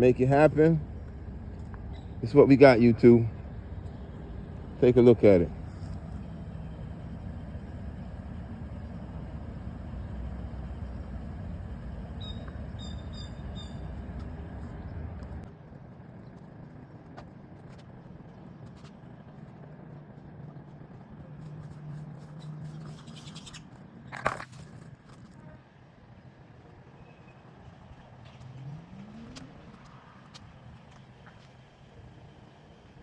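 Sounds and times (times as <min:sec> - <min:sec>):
low steady rumble: 0:00.0 - 0:33.0.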